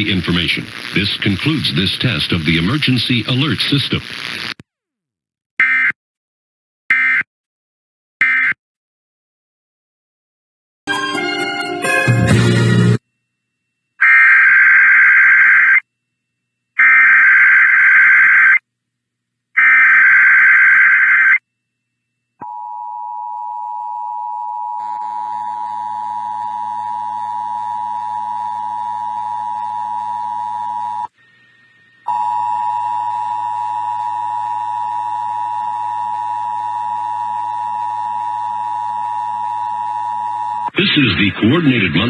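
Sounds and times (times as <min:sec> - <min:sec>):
two-tone attention signal: 0:05.6 - 0:06.0, 0:06.9 - 0:07.3, 0:08.2 - 0:08.6.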